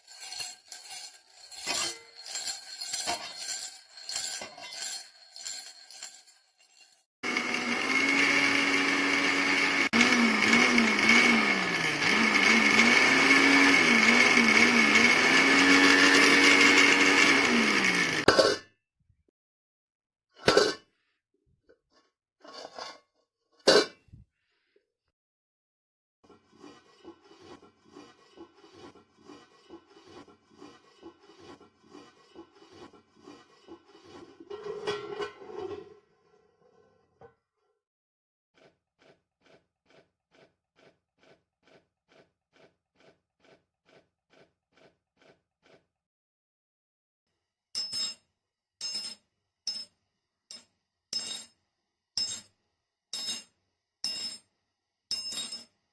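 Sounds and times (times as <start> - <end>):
clinking strikes of hard object: 47.8 - 48.2, 55.1 - 55.7.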